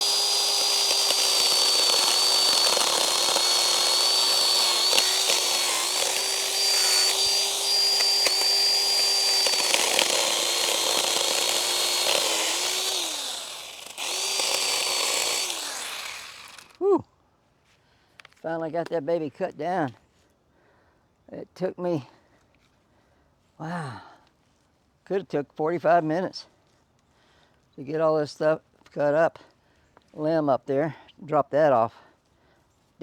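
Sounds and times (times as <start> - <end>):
electric chainsaw cutting wood: 0.0 - 16.8.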